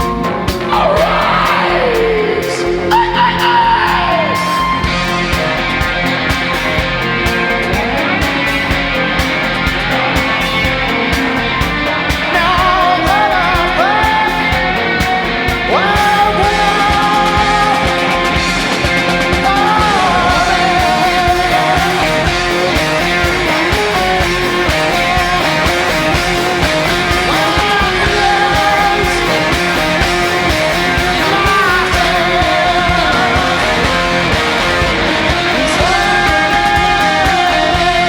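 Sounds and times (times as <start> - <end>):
rock band playing live: 0.0 - 38.0
person singing sliding notes: 12.3 - 38.0.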